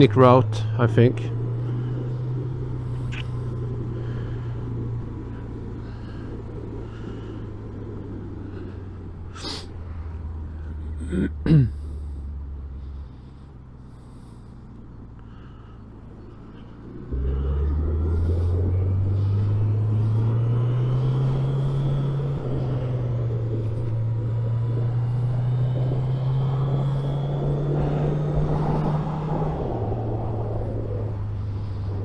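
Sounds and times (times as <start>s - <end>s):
motorcycle engine: 0.0s - 32.0s
rider breathing into microphone: 1.4s - 10.9s, 11.9s - 32.0s
wind noise: 17.1s - 32.0s.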